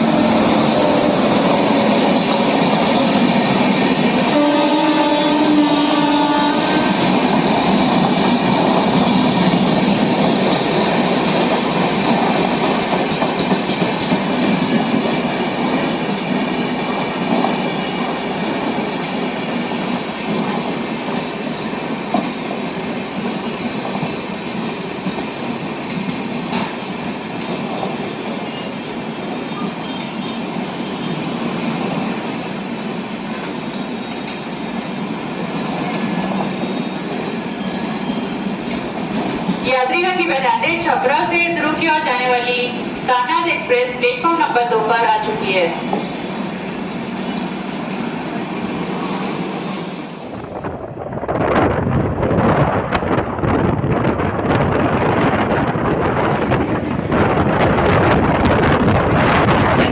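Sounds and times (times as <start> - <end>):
train wheels clattering on rails: 0.0 - 28.8, 29.4 - 39.7, 51.5 - 59.9.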